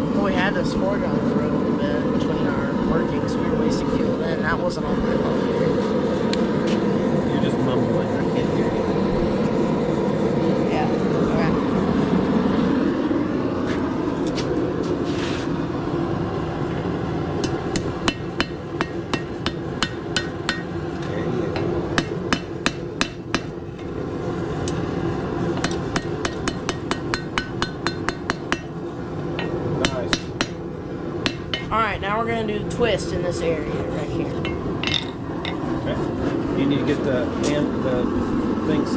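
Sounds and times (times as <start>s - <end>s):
forge roaring: 0.0s - 38.9s
hammer striking steel on anvil: 17.4s - 20.7s, 21.6s - 23.6s, 25.6s - 28.7s, 29.4s - 30.6s.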